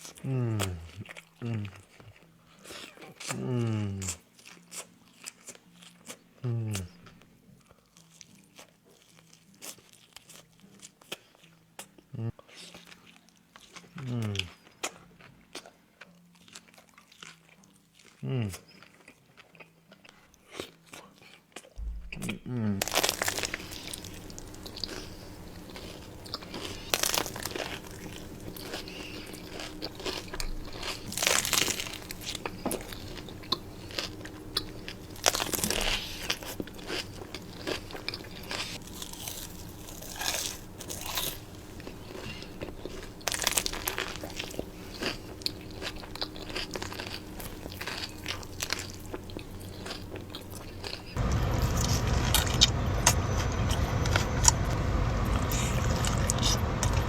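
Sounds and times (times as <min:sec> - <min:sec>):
crunchy wet chewing: 0:00.0 - 0:57.0
low rumble: 0:21.8 - 0:28.7, 0:51.2 - 0:57.0.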